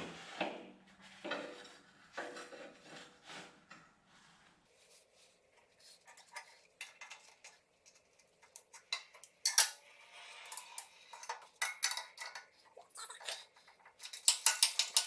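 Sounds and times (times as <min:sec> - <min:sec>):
metal tools clinking and clattering: 0:08.4 - 0:12.6, 0:13.3 - 0:15.0.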